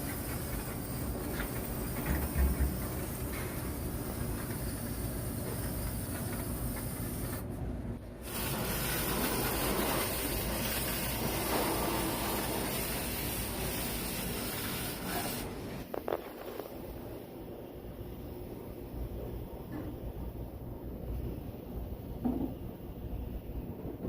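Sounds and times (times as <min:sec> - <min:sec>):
steam cleaner hissing: 0:00.0 - 0:07.5, 0:08.2 - 0:16.7.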